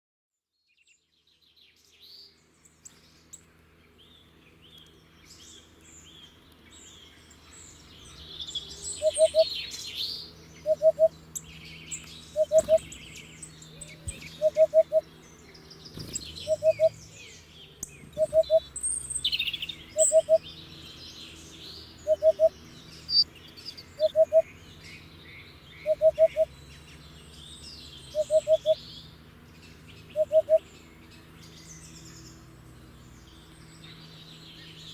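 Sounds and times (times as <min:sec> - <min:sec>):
small birds chirping: 0:00.6 - 0:34.9
hoopoe calling oop-oop-oop: 0:09.0 - 0:09.5, 0:10.6 - 0:11.1, 0:12.4 - 0:13.0, 0:13.8 - 0:15.0, 0:16.4 - 0:17.0, 0:18.1 - 0:18.7, 0:20.0 - 0:20.4, 0:22.0 - 0:22.5, 0:24.0 - 0:24.5, 0:25.8 - 0:26.5, 0:28.2 - 0:28.8, 0:30.2 - 0:30.6.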